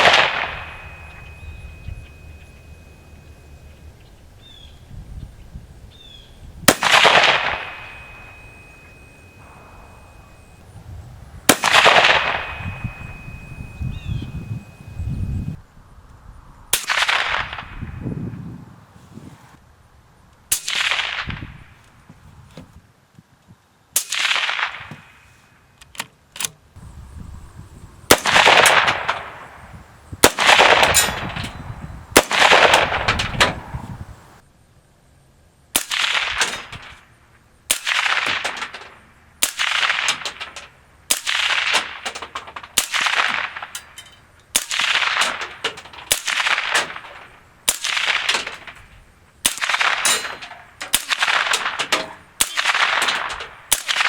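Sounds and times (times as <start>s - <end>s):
suppressed rifle shots: 0.0s - 2.9s, 6.7s - 10.6s, 11.5s - 13.7s, 16.8s - 17.7s, 28.1s - 29.6s, 30.2s - 31.6s, 32.2s - 33.7s, 35.8s - 37.0s, 37.7s - 54.0s.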